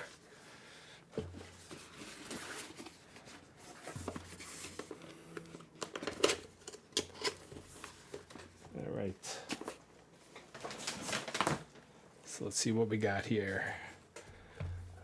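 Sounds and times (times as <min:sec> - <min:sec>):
plastic and foam wrap crinkling: 0:09.4 - 0:11.8.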